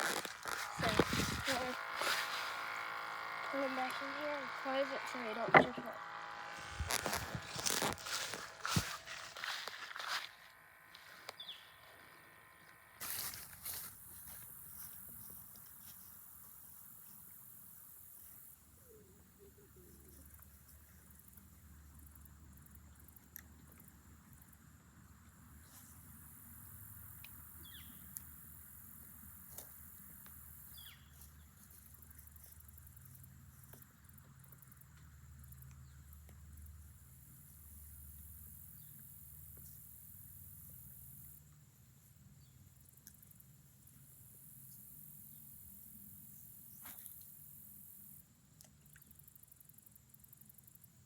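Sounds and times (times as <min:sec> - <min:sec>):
rustling handling noise: 0:00.0 - 0:02.9, 0:06.6 - 0:10.4, 0:13.0 - 0:16.2
insects chirring: 0:00.0 - 0:41.6
faint outdoor background sound: 0:00.0 - 0:51.0.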